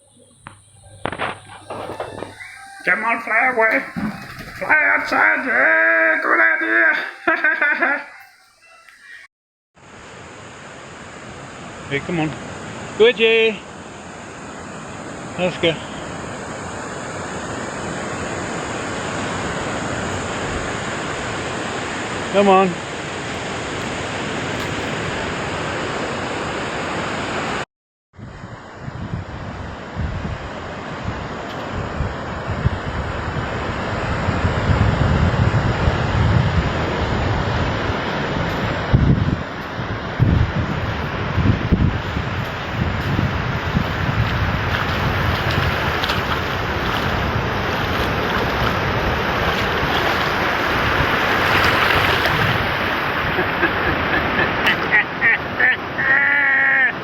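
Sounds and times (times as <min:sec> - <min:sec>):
wind buffeting microphone: 0:00.4 - 0:05.6, 0:28.2 - 0:54.0
surf rushing on beach: 0:00.8 - 0:08.2, 0:09.8 - 0:27.6, 0:28.2 - 0:57.0.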